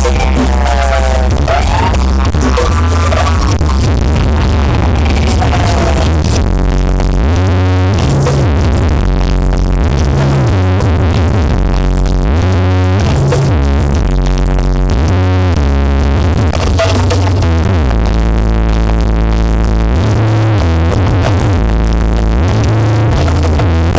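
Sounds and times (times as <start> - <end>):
electronic dance music: 0.0 - 10.0, 16.5 - 17.7, 21.2 - 23.9.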